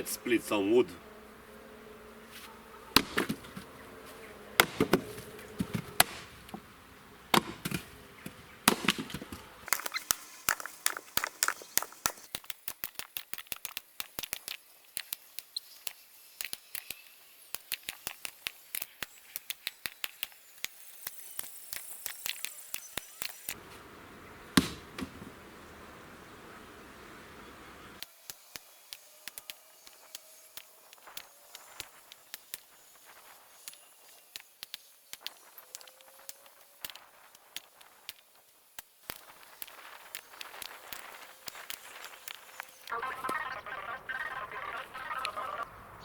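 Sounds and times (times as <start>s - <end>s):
firewood splitting knocks and cracks: 3.0s - 3.6s, 4.6s - 6.6s, 7.3s - 11.9s, 24.6s - 25.3s.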